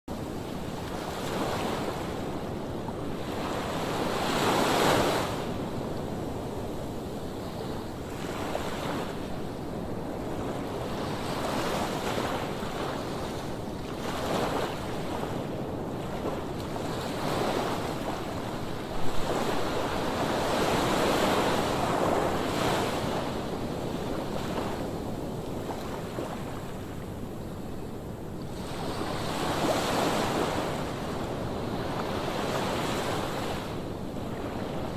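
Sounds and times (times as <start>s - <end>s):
wind on microphone: 0.1s - 34.9s
waves breaking on shore: 0.2s - 27.7s, 28.4s - 34.9s.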